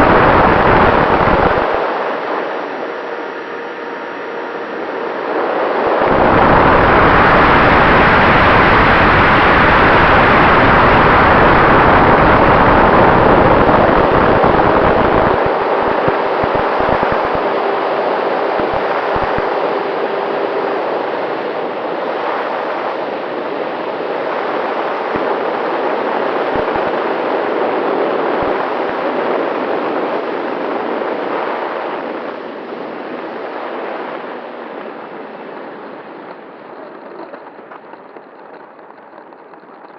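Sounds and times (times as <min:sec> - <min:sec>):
electric ducted fan rushing: 0:00.0 - 0:39.9
faint steady whine: 0:00.0 - 0:39.9.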